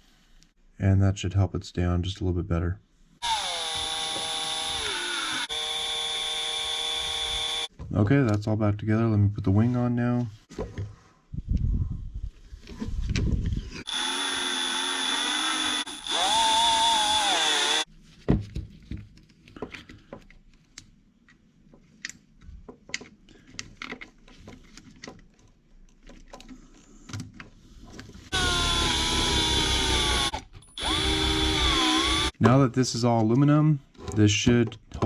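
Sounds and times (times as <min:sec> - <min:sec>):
electric screwdriver whining: 0:03.2 - 0:07.7, 0:13.8 - 0:17.9, 0:28.3 - 0:32.3
clicks of parts and screws: 0:19.0 - 0:28.2.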